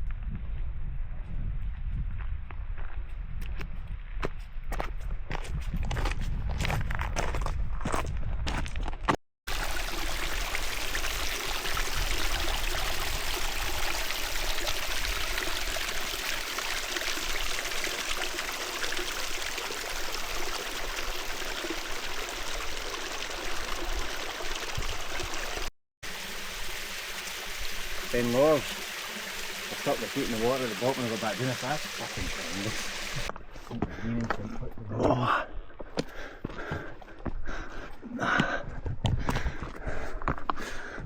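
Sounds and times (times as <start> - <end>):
stream rushing water: 9.5 - 33.3.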